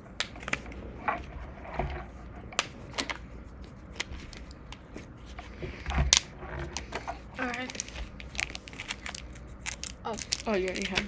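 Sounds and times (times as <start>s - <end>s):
cards clicking and snapping: 0.1s - 1.0s, 2.2s - 11.0s.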